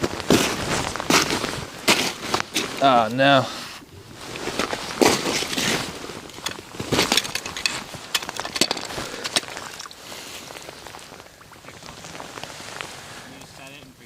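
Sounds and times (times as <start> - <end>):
irregular clicks and crackles: 4.3 - 13.5.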